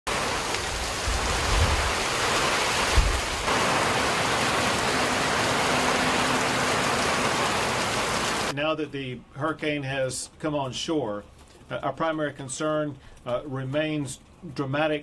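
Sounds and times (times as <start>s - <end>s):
heavy rain pouring: 0.0s - 8.6s.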